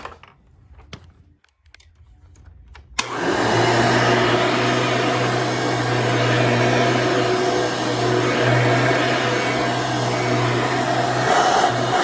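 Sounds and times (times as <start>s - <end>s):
vacuum cleaner switch click: 3.0s - 3.3s
vacuum cleaner motor running: 3.0s - 12.0s.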